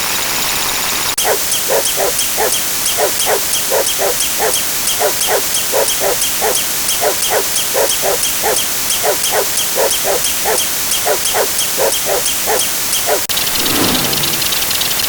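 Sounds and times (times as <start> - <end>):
fast ticking: 1.2 - 13.4
engine-like rumble: 13.4 - 15.0.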